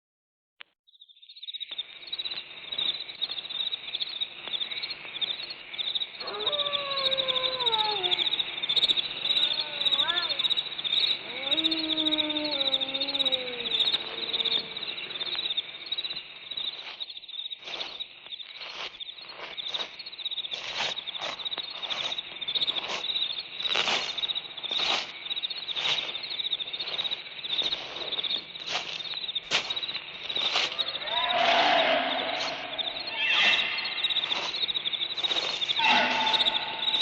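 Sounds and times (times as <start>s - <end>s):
crickets chirring: 1.1s - 37.0s
sharp high calls: 6.2s - 15.4s, 30.6s - 37.0s
long falling howl: 11.2s - 15.0s, 30.8s - 34.2s, 35.8s - 37.0s.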